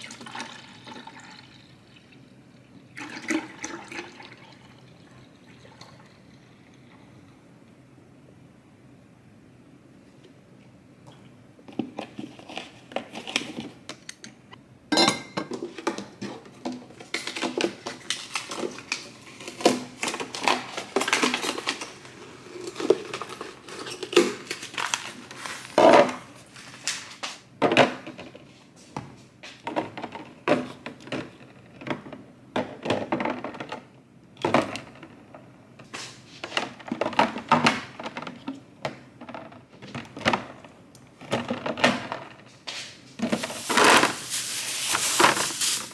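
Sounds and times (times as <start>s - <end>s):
kitchen items clinking and clattering: 15.0s - 28.4s, 29.6s - 35.1s, 36.4s - 42.4s, 43.2s - 45.9s.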